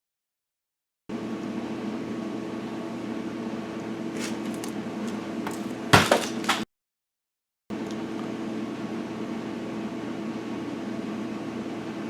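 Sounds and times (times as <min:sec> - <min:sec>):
clatter of object handled: 0:04.2 - 0:06.6.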